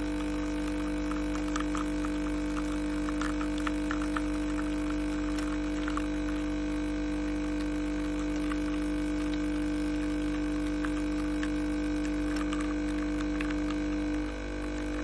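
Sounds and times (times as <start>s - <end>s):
coffee machine pump humming: 0.0s - 15.0s
faint ticks: 1.1s - 6.4s.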